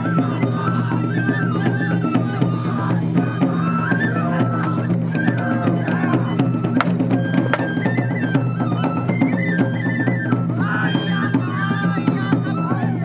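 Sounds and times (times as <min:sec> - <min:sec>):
drum strokes: 0:06.4 - 0:07.8.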